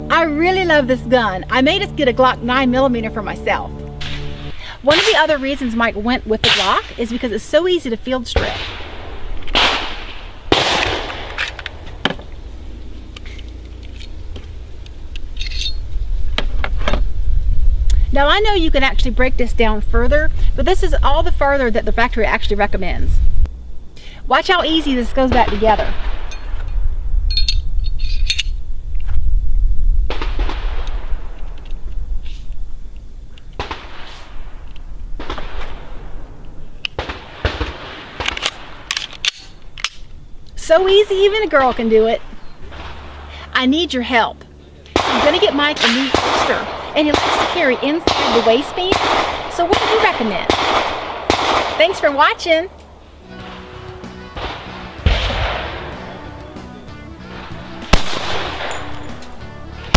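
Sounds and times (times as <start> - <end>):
gun parts rattling: 15.2 - 15.9, 27.3 - 28.6, 38.2 - 40.2
pistol slide snapping: 38.2 - 40.1
sharp clicks of gun parts: 38.2 - 40.1.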